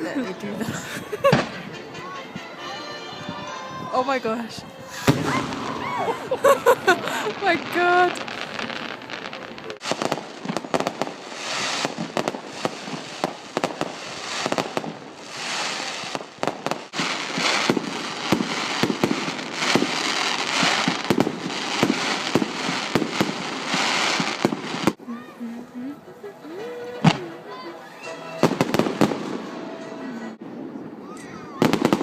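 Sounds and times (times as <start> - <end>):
fireworks crackling: 0.0 - 2.6, 3.2 - 32.0
fireworks cracks and bangs: 1.1 - 1.7, 5.0 - 25.1, 28.2 - 32.0.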